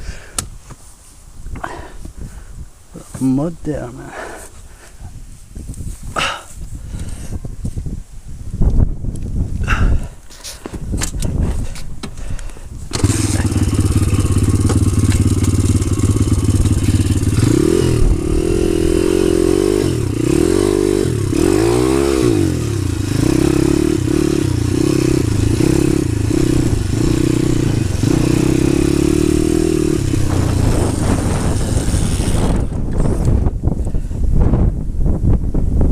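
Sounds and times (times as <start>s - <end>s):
motorbike engine revving: 12.9s - 33.6s.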